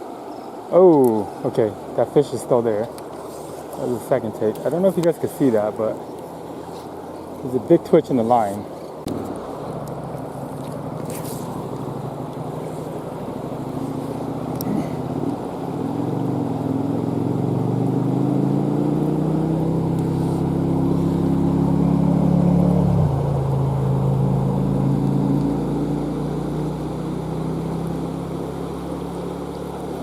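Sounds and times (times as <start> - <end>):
river water rushing: 0.0 - 30.0
passing engine drone: 9.1 - 30.0.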